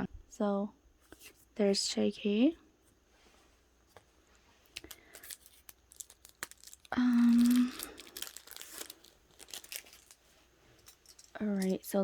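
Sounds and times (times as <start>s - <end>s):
plastic packaging crinkling: 4.6s - 11.9s.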